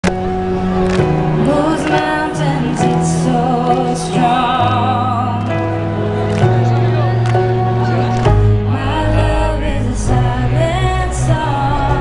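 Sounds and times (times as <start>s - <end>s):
trance music bass notes: 6.6s - 12.0s
sustained sung vocal: 8.6s - 12.0s.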